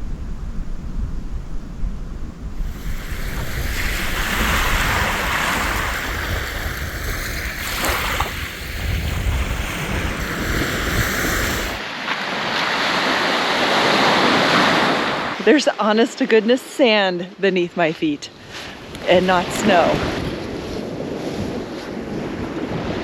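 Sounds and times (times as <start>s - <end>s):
wind buffeting microphone: 0.0s - 11.8s, 18.3s - 23.0s
waves washing onto beach: 2.6s - 15.7s, 18.4s - 23.0s.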